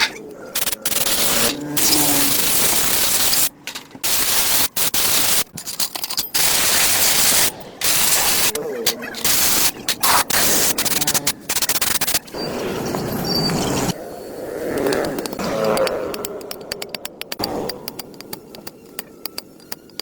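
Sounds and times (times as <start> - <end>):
loud hissing: 0.5 - 5.5, 6.4 - 12.6.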